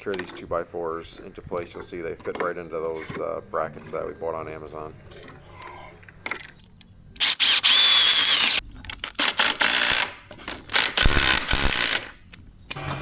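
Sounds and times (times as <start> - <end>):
power drill drilling into wood: 7.2 - 8.6, 10.7 - 12.0.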